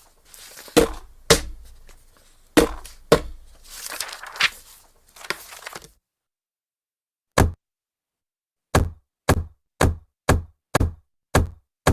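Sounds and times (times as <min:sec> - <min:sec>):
rubber stamp thudding on paper: 0:00.0 - 0:03.8
rustle: 0:03.6 - 0:05.8.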